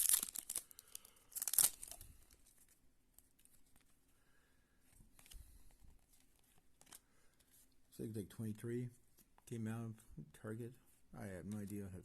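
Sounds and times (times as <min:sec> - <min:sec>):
plastic wrapper crinkling and tearing: 0:00.0 - 0:02.8
cards being handled: 0:00.0 - 0:04.0, 0:04.9 - 0:07.7, 0:11.4 - 0:12.0.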